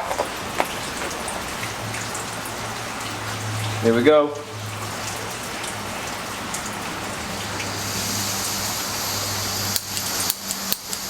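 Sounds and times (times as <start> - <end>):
gas hissing from stove: 7.6 - 11.0
sharp igniter clicks: 9.6 - 11.0.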